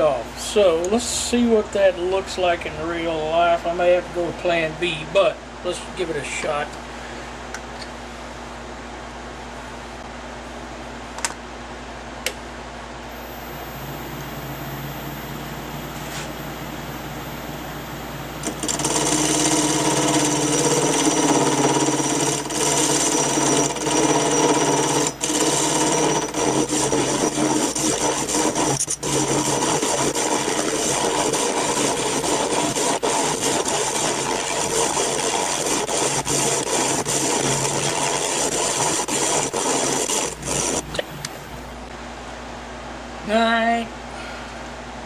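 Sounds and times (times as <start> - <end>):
lathe hum: 13.1 - 41.9
turning tool scraping metal tube: 18.3 - 41.0.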